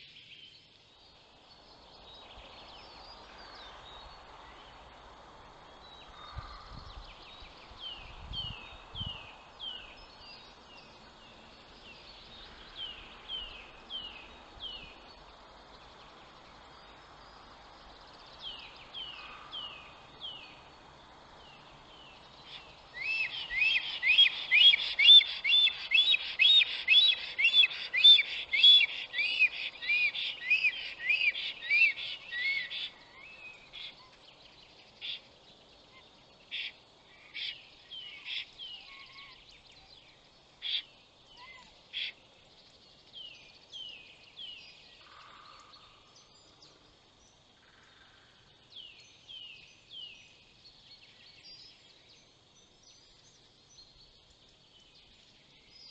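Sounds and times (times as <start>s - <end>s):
bird chirping: 21.4s - 55.9s.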